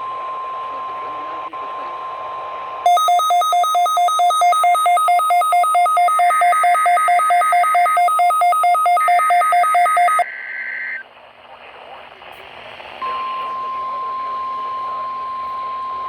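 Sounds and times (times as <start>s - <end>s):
two-tone electronic alert beeping: 2.9s - 10.3s
two-tone data bursts: 2.9s - 11.0s.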